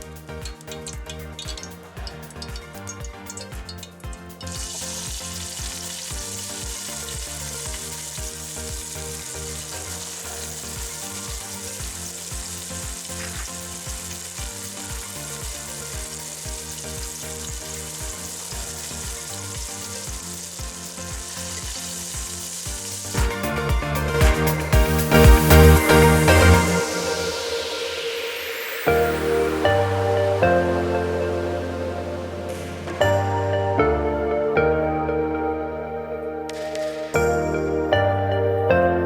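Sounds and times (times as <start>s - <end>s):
food sizzling in hot oil: 0.0s - 33.4s
background music with a beat: 0.0s - 39.0s.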